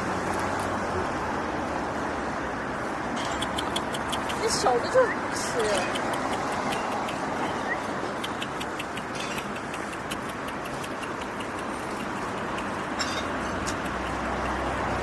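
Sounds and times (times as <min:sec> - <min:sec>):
traffic rumble: 0:00.0 - 0:15.0
high clicks: 0:03.2 - 0:15.0.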